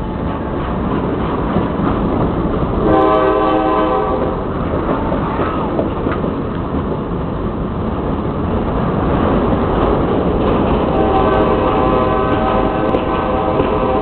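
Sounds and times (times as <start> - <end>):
train cars rumbling over rails: 0.0 - 14.0
train horn chord: 2.8 - 4.4, 10.9 - 14.0.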